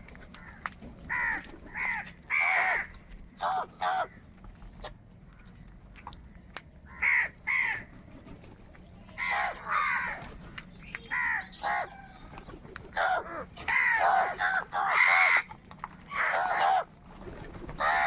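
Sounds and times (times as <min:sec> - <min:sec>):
crows cawing: 0:00.4 - 0:04.2, 0:06.9 - 0:07.9, 0:09.2 - 0:10.2, 0:11.1 - 0:11.9, 0:12.9 - 0:15.5, 0:16.1 - 0:16.9, 0:17.8 - 0:18.0.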